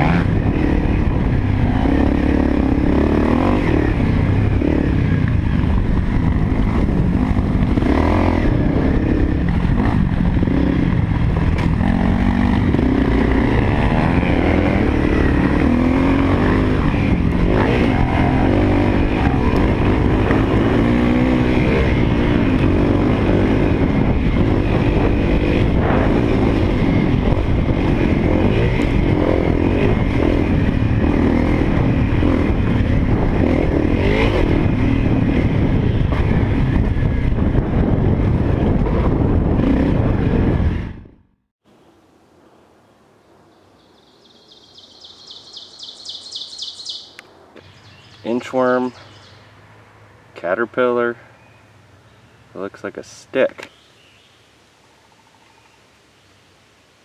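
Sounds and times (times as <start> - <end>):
dirt bike engine revving: 0.0 - 41.2.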